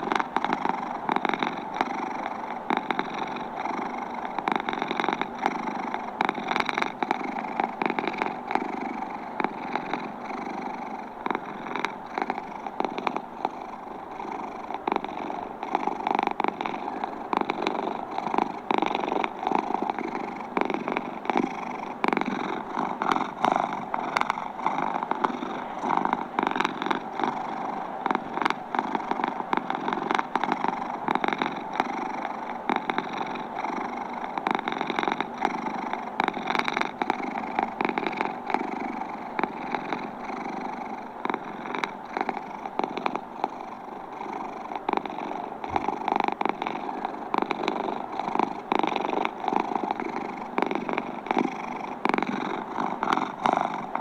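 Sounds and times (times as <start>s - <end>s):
cat purring: 0.0s - 54.0s.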